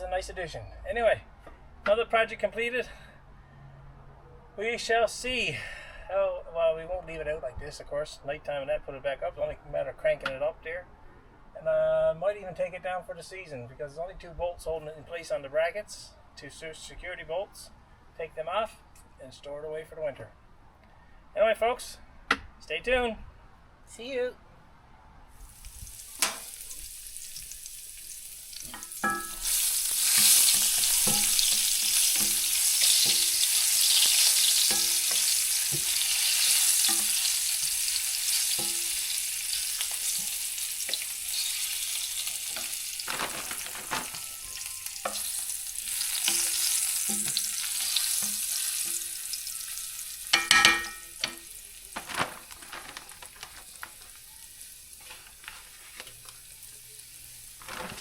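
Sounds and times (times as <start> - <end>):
food sizzling in a frying pan: 25.3 - 52.5, 53.2 - 58.0
utensil knocking against pan: 50.4 - 51.4.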